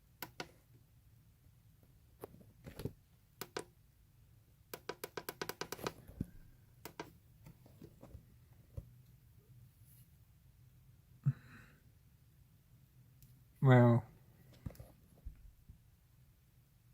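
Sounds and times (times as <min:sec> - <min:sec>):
plastic buttons clicking: 0:00.2 - 0:00.6, 0:02.7 - 0:03.7, 0:04.7 - 0:06.0, 0:06.8 - 0:07.1.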